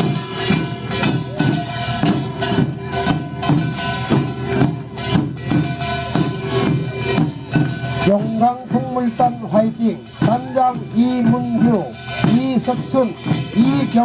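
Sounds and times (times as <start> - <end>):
drums beating: 0.0 - 14.0
ringing gongs: 0.0 - 14.0.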